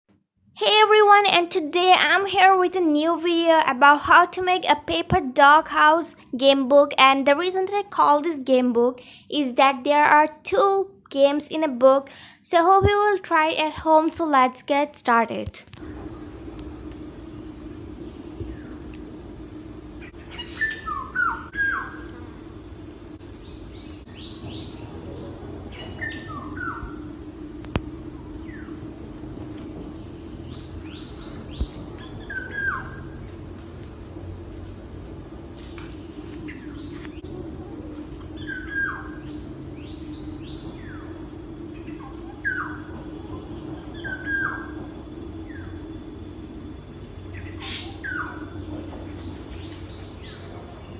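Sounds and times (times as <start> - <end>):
birds whistling: 15.8 - 22.5, 23.1 - 28.9, 30.0 - 33.2, 35.4 - 37.2, 38.2 - 45.9, 47.2 - 50.6
high-pitched hum: 15.8 - 50.9.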